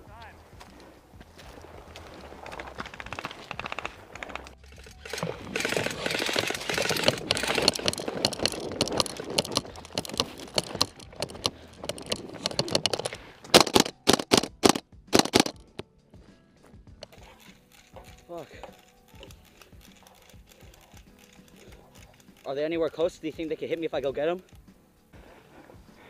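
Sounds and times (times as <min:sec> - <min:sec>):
airsoft guns full-auto bursts: 0:05.0 - 0:09.2, 0:13.6 - 0:15.6.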